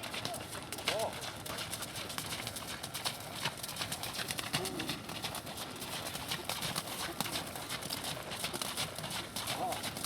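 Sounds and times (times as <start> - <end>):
horse hoofbeats clip-clopping: 0.0 - 10.0.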